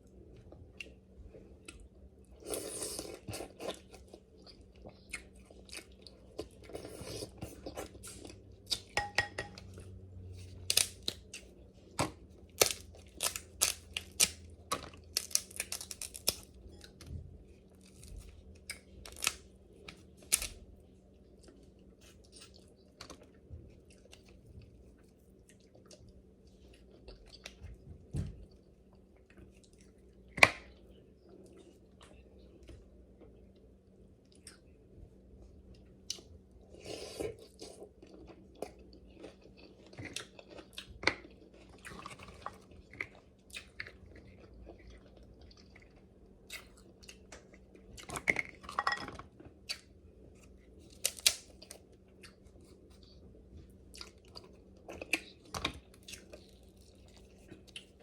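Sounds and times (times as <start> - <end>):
person chewing: 1.6 - 9.9, 35.7 - 48.6, 49.3 - 58.0
crab shells cracking: 10.7 - 11.2, 12.6 - 14.4, 15.0 - 16.5.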